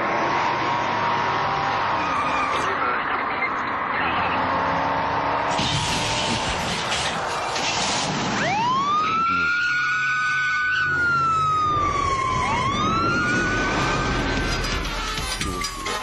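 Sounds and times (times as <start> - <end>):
siren wailing: 0.5 - 4.5, 8.2 - 16.0.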